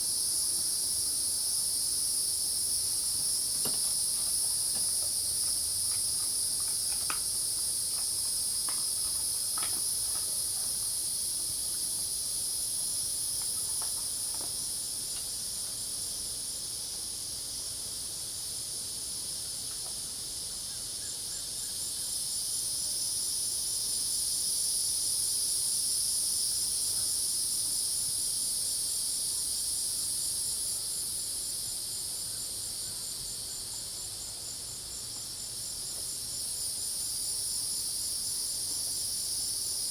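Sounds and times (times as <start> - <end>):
crickets and cicadas trilling: 0.0 - 39.9.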